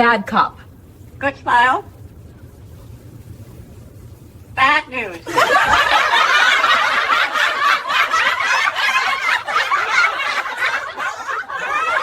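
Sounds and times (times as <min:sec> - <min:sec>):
people laughing: 0:05.3 - 0:12.0.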